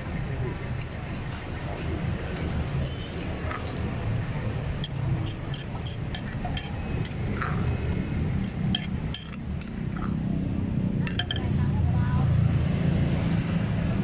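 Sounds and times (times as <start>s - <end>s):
dishes and utensils clinking: 8.4s - 10.2s, 11.0s - 11.6s.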